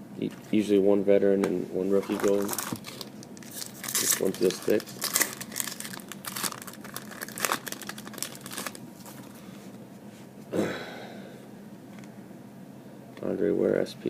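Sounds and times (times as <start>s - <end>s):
wrapper crinkling and tearing: 2.0s - 9.3s.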